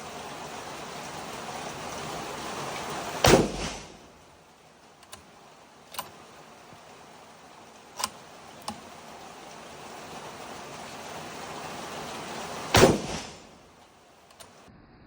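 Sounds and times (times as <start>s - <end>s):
rain hissing: 0.0s - 14.7s
rifle shot: 3.2s - 4.0s, 12.7s - 13.5s
sharp clicks: 5.0s - 5.3s, 8.0s - 8.9s, 14.2s - 14.6s.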